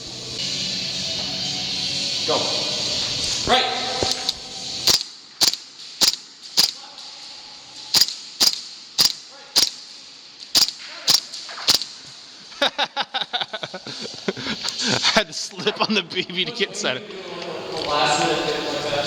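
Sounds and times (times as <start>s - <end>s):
airsoft gun shots: 3.4s - 7.1s, 7.8s - 12.2s.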